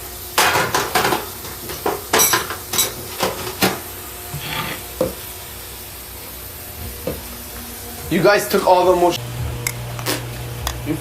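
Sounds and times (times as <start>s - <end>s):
dishes and utensils clattering: 0.4s - 5.2s.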